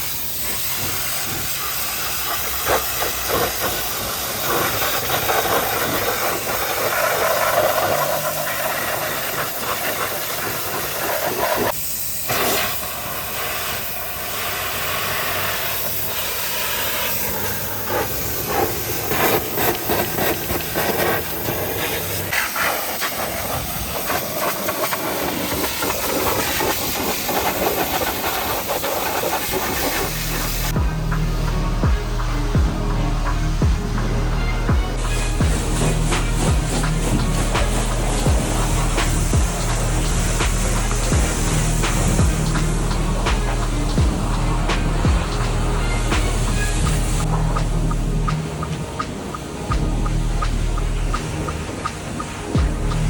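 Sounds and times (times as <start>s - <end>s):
pressure washer jet spraying: 0.0s - 53.0s
low steady hum: 29.6s - 53.0s.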